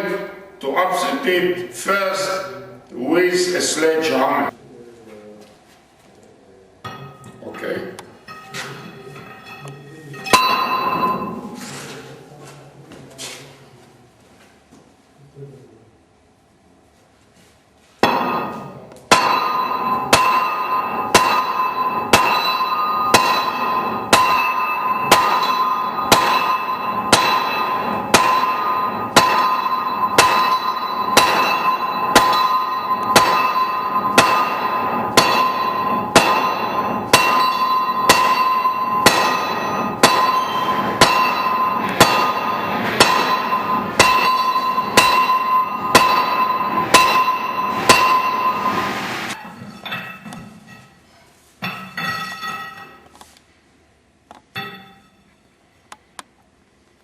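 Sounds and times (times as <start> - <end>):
sledgehammer ringing on steel anvil: 6.9 - 11.6, 18.0 - 50.9, 51.6 - 53.0, 54.5 - 55.3.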